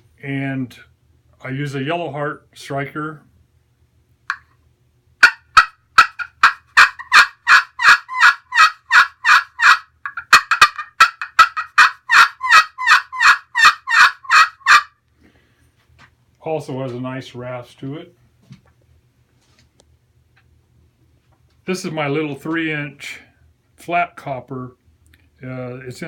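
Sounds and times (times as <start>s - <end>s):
turkey call yelps: 5.2s - 15.0s.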